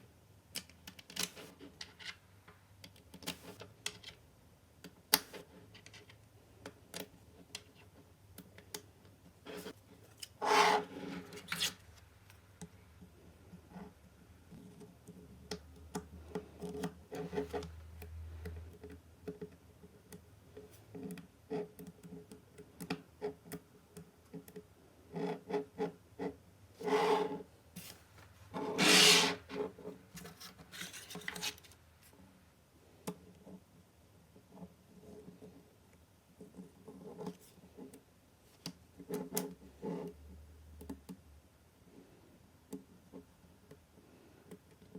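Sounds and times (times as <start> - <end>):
balls scraping and rolling: 9.4 - 12.1, 25.1 - 32.2.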